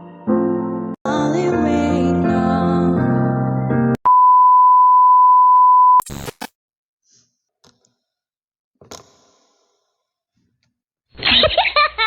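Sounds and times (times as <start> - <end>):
piano music: 0.0 - 4.0.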